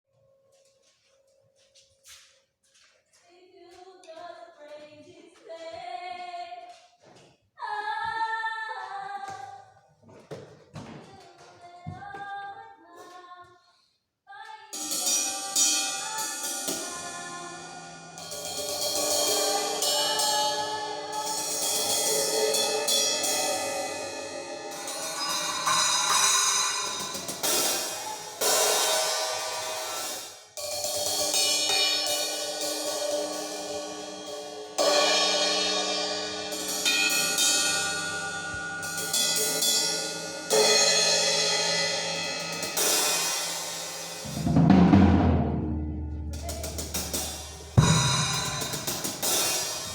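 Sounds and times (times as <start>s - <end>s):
music with drums and cymbals: 14.8s - 49.9s.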